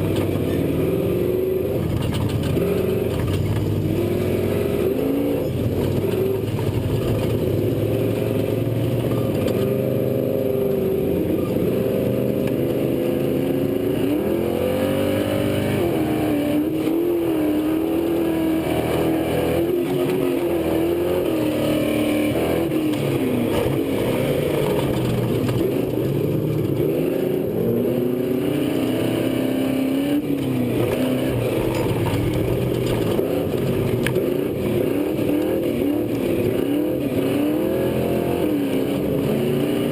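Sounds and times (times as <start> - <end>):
truck engine revving hard: 11.8 - 39.9.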